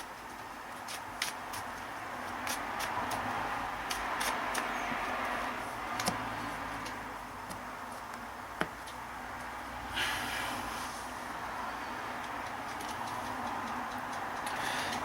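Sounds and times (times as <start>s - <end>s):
room hiss: 9.0s - 12.0s.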